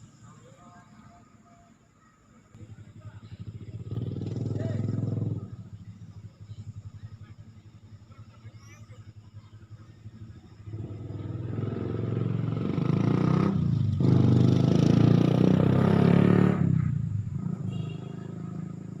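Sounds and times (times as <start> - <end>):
vehicle engine passing by: 2.9 - 6.8, 10.5 - 19.0.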